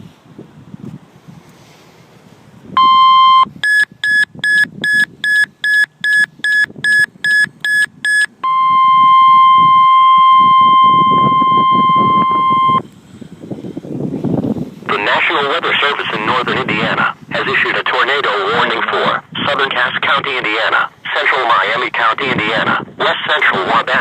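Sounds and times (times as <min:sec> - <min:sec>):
high beeps: 0:02.8 - 0:12.8
long steady alarm tone: 0:02.8 - 0:12.8.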